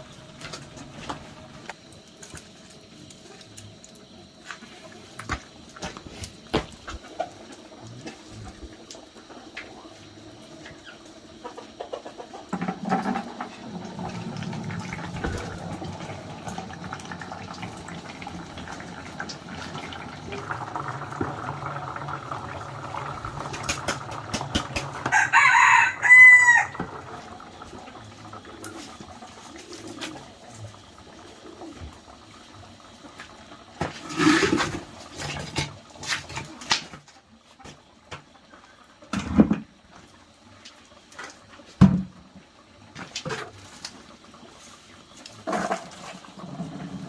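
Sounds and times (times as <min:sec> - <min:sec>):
rooster crowing: 0:25.0 - 0:26.9.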